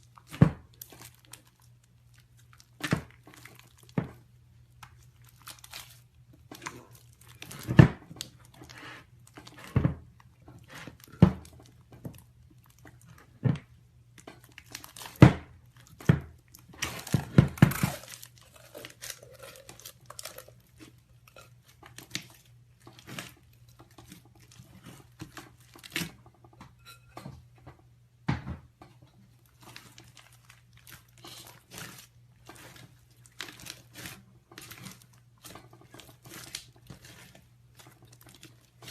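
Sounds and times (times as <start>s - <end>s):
slime crackling and popping: 0.0s - 9.6s, 14.0s - 26.2s, 29.4s - 38.9s.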